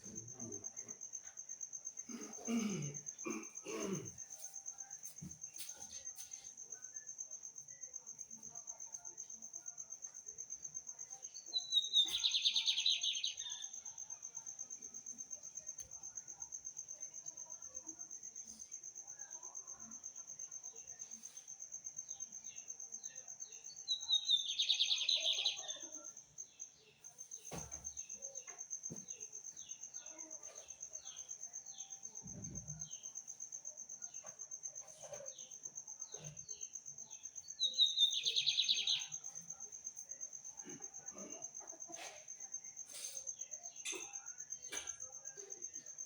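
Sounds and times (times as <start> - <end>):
songbird singing trills: 11.2 - 14.0, 22.5 - 26.7, 36.0 - 39.4.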